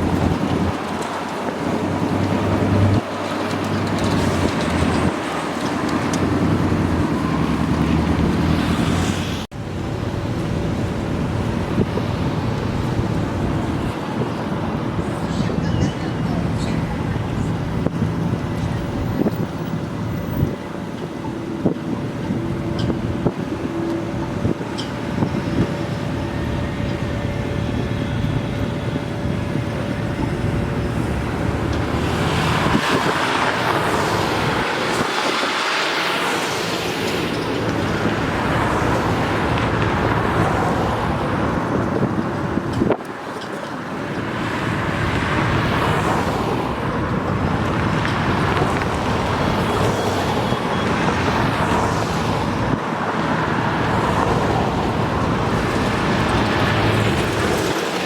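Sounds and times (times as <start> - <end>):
road traffic passing: 0.0 - 58.0.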